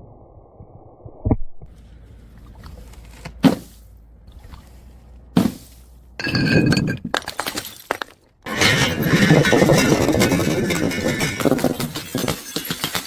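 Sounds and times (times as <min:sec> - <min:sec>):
glass bottle shattering: 0:05.4 - 0:13.0
glass shards clinking: 0:05.5 - 0:13.0
glass bottle knocking on concrete: 0:06.2 - 0:07.2.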